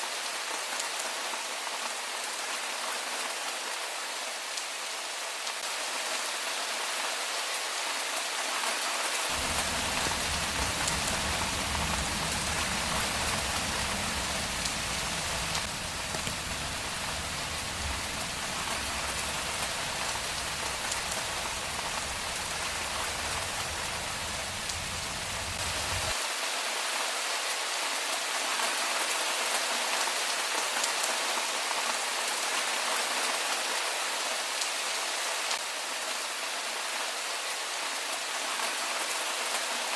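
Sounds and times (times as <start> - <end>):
rain pattering on surfaces: 0.1 - 39.9
low rumble: 9.4 - 26.1.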